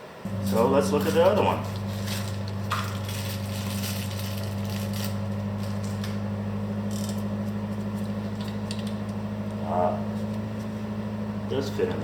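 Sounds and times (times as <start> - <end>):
machine humming: 0.1 - 12.0
small metal parts clicking and rattling: 6.9 - 7.2.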